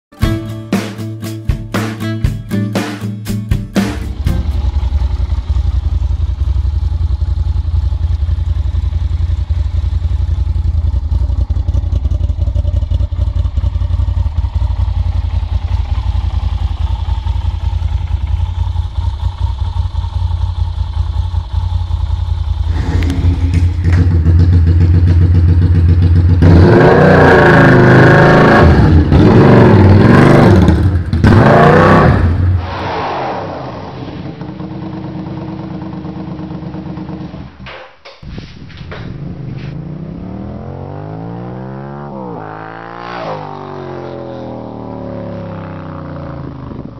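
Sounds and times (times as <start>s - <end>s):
motorcycle engine revving: 3.8s - 46.9s
motorcycle engine idling: 4.0s - 26.5s, 34.4s - 37.6s.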